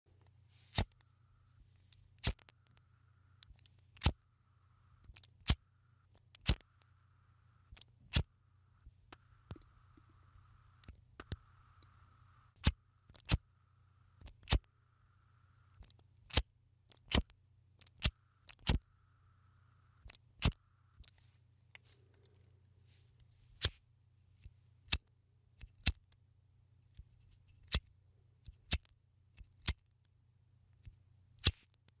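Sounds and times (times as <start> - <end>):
lighter spark wheel clicks: 0.7 - 1.0, 2.2 - 2.8, 3.4 - 4.2, 6.4 - 6.6, 14.2 - 14.7, 17.0 - 18.8, 31.4 - 31.8.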